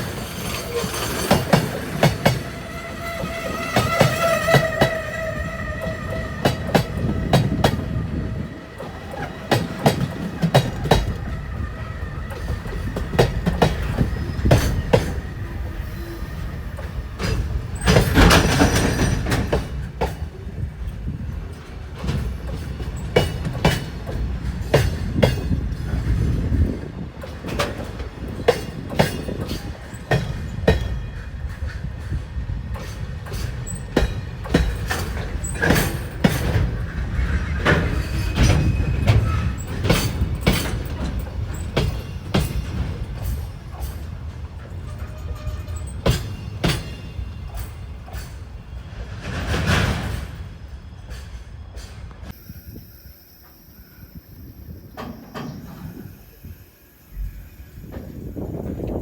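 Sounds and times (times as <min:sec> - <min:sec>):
train wheels clicking on rails: 0:00.0 - 0:52.6, 0:54.7 - 0:59.0
low train rumble: 0:00.0 - 0:59.0.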